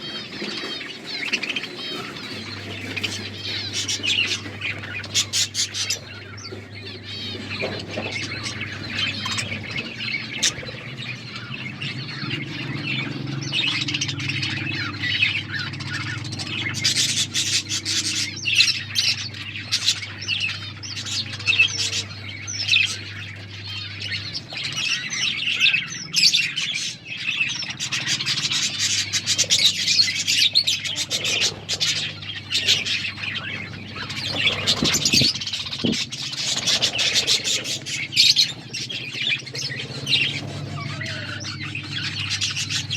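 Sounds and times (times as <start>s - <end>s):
budgerigars chirping and squawking: 0.0s - 42.9s.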